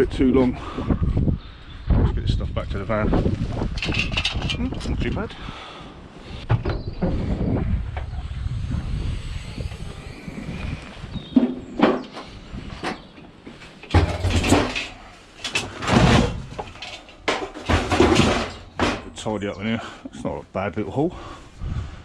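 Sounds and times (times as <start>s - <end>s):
low rumble: 6.9s - 11.3s
scrap metal clattering: 11.4s - 19.2s.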